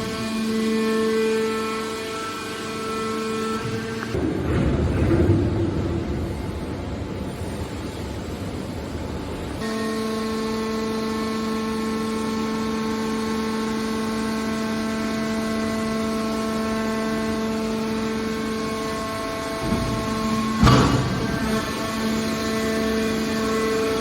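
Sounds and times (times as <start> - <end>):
machine hum: 0.0 - 24.0
pitched machine whine: 9.6 - 24.0.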